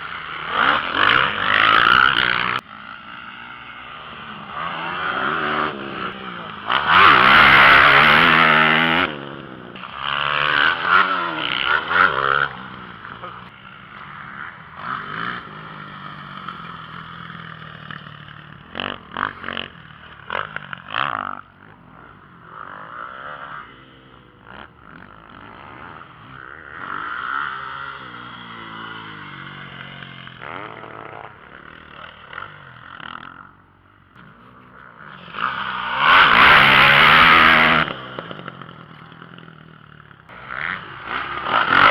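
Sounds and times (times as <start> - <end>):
dirt bike engines revving: 0.0 - 41.9.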